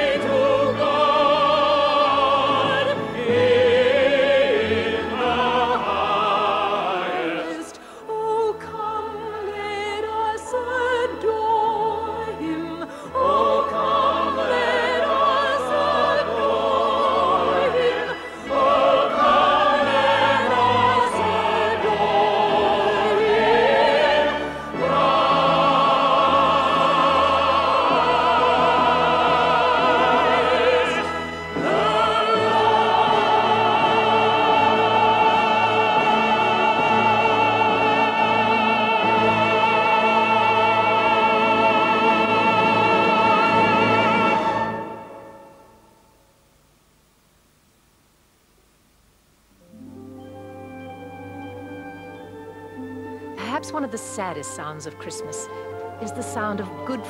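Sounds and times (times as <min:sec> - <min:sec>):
operatic singing: 0:00.0 - 0:45.7
orchestra playing: 0:49.7 - 0:57.0.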